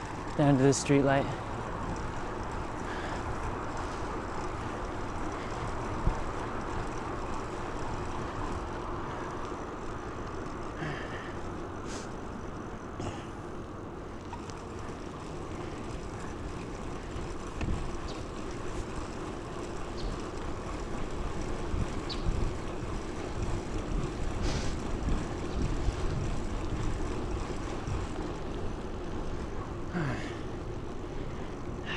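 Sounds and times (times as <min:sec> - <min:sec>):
bicycle tyre and road rumble: 0:00.0 - 0:31.9
wind buffeting microphone: 0:01.5 - 0:09.8, 0:15.2 - 0:29.4
faint ticks: 0:14.2 - 0:20.8.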